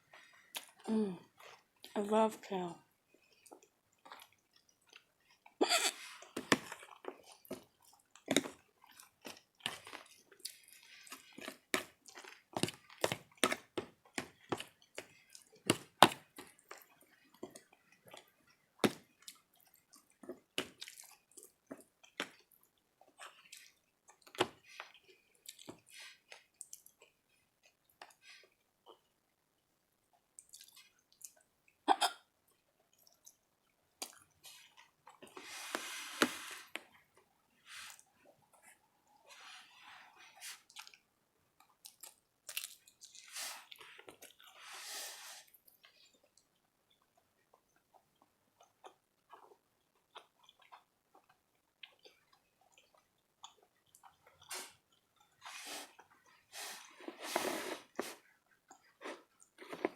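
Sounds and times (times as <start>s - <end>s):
wet chewing and mouth clicks: 3.1s - 5.6s, 6.2s - 29.1s, 30.1s - 31.8s, 32.5s - 35.4s, 40.6s - 44.6s, 45.5s - 57.2s, 57.9s - 59.9s.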